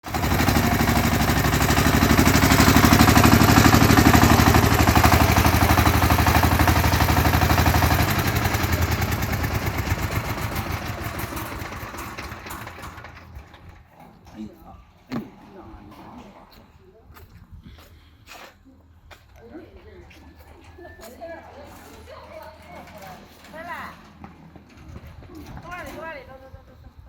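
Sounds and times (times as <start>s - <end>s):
small tractor engine running: 0.0s - 14.0s.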